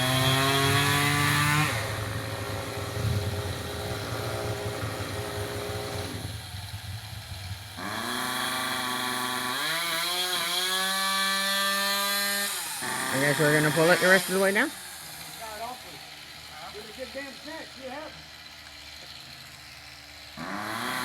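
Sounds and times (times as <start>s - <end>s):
two-stroke chainsaw revving: 0.0s - 21.0s.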